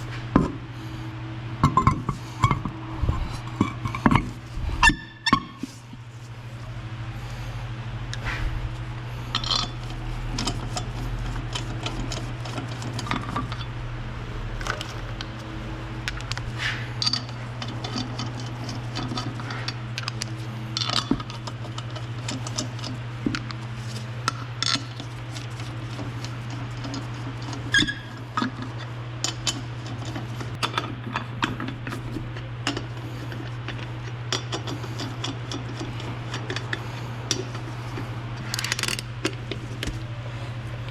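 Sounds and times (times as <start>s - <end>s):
steady low hum: 0.0s - 40.9s.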